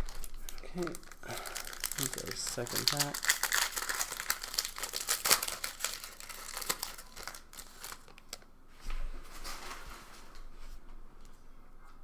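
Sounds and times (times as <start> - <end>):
foil wrapper crinkling and tearing: 0.0 - 8.5
wrapper rustling: 0.0 - 8.5.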